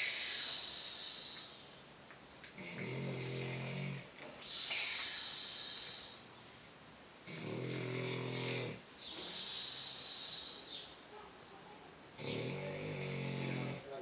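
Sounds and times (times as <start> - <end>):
hissing breath: 0.0 - 1.8, 4.3 - 6.3, 9.0 - 10.9
person snoring: 7.3 - 10.6, 12.2 - 13.9.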